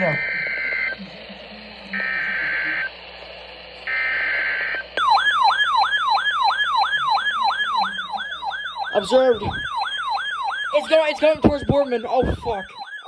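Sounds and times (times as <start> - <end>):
buzzy digital data bursts: 3.6 - 12.8
yelping siren-like alert tone: 5.0 - 13.0.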